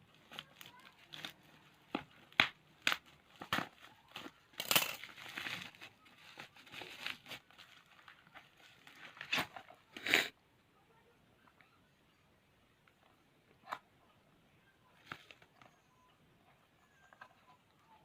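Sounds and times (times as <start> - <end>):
plastic packaging crinkling: 0.1 - 9.7.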